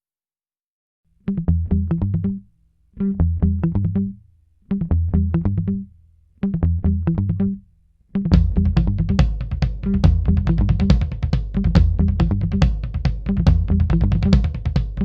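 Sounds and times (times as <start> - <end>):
quick repeated notes over heavy bass: 8.3 - 15.0.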